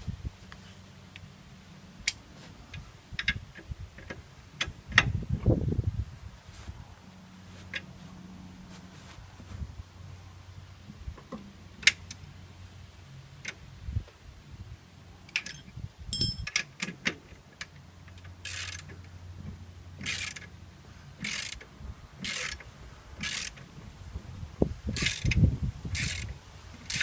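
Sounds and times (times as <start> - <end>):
metal tools clinking on parts: 15.3 - 16.7
ratchet wrench clicking: 18.4 - 19.0, 20.0 - 20.5, 21.2 - 21.6, 22.2 - 22.6, 23.2 - 23.6, 25.0 - 25.4, 26.0 - 27.0.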